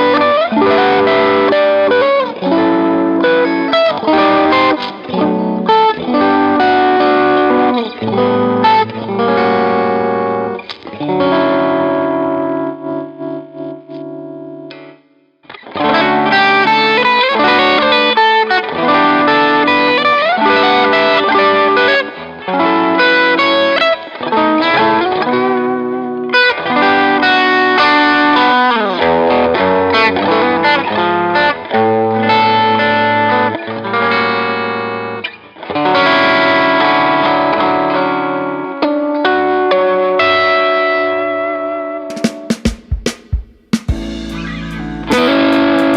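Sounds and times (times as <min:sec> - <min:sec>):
overdriven electric guitar: 0:00.0 - 0:43.0, 0:43.7 - 0:45.9
backing track: 0:42.1 - 0:45.9.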